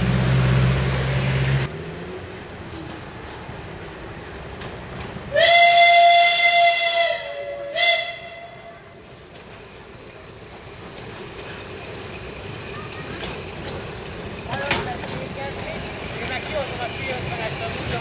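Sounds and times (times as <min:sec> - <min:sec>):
steam locomotive whistle: 0:05.3 - 0:08.9.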